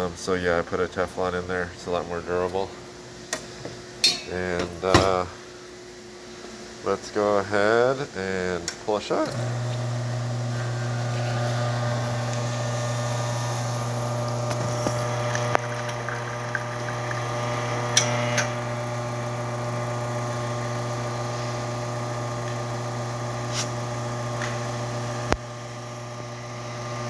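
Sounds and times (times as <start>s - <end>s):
espresso machine pump humming: 9.3s - 27.0s.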